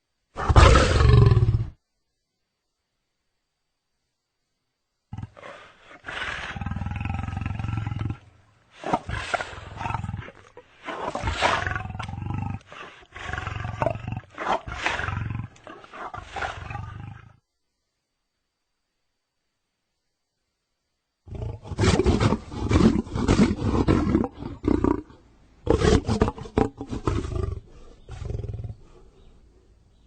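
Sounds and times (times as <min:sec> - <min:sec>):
lion roaring: 0:05.1 - 0:17.3, 0:21.3 - 0:29.0.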